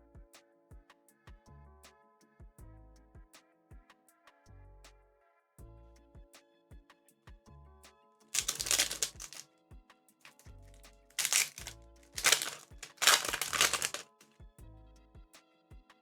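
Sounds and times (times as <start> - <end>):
foil wrapper crinkling: 8.4 - 9.4, 11.1 - 14.2.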